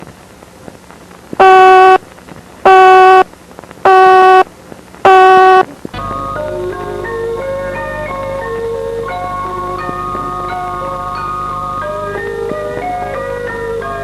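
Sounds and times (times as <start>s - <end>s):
buzzy alert alarm beeps: 1.4s - 2.0s, 2.7s - 3.2s, 3.9s - 4.4s, 5.1s - 5.7s
marimba-like melody: 6.0s - 14.0s.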